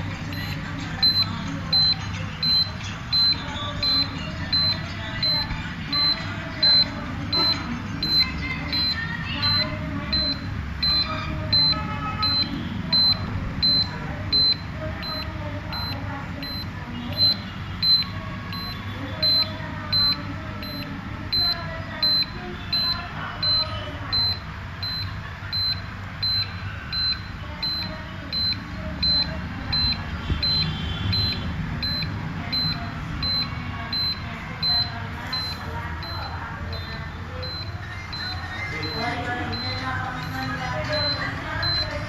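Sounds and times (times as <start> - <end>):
buzzer beeping: 0.0 - 42.0.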